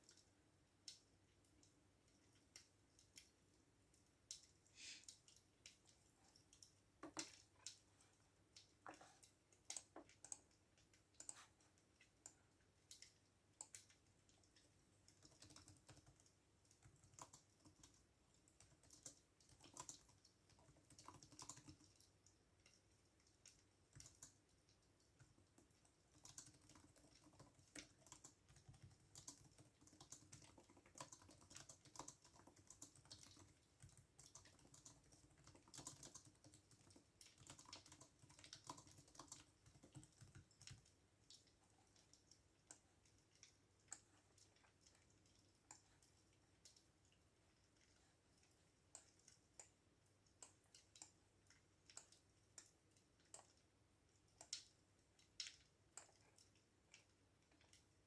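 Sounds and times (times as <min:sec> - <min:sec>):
keyboard typing: 0:09.6 - 0:46.9.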